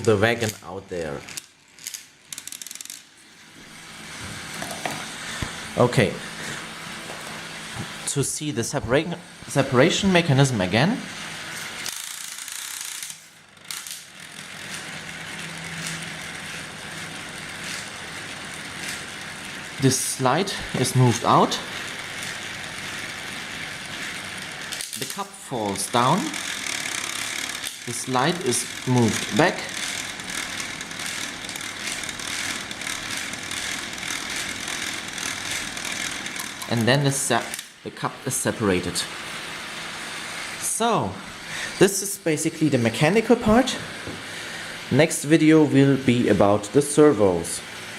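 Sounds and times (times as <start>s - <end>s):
toy motor driving plastic gears: 0.0s - 5.9s, 9.0s - 37.8s.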